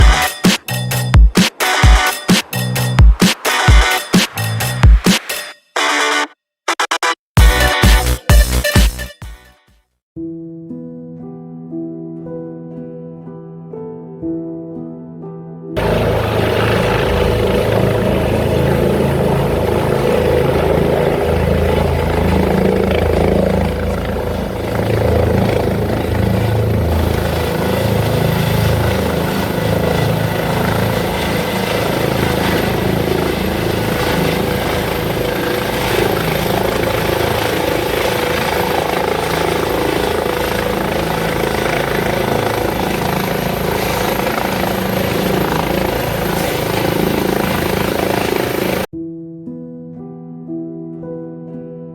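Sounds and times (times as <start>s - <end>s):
helicopter rotor beat: 0.0s - 5.5s, 15.8s - 48.9s
high whine: 0.0s - 6.2s, 15.8s - 48.9s.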